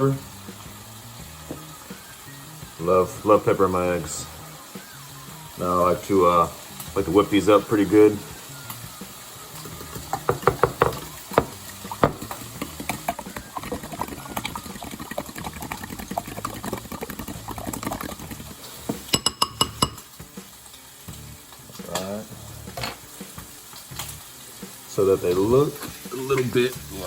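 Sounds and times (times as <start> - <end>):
bacon sizzling in a pan: 0.0 - 27.0
eggs beaten in a bowl: 10.1 - 20.1
ringing taps on a bowl: 10.3 - 12.2, 19.1 - 20.0.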